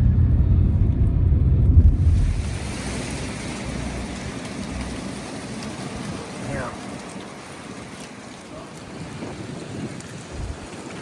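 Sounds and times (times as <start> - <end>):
wind gusting on microphone: 0.0 - 11.0.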